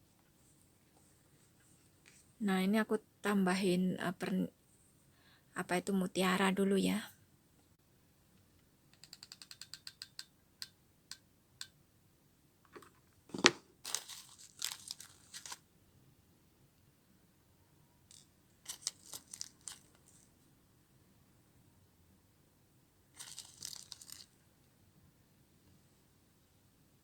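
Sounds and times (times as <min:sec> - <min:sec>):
scattered clicks: 0:08.9 - 0:11.8
crinkling rustle: 0:13.3 - 0:15.6, 0:18.1 - 0:20.3, 0:23.2 - 0:24.4.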